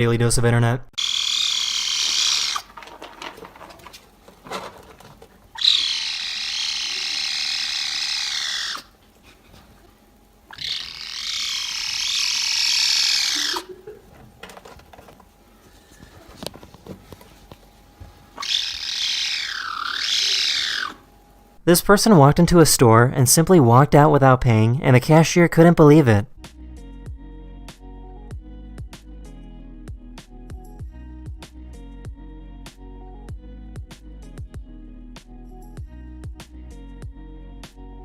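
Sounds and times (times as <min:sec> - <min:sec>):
cat crying: 0:01.0 - 0:02.8, 0:05.5 - 0:09.0, 0:10.5 - 0:13.9, 0:18.4 - 0:21.0.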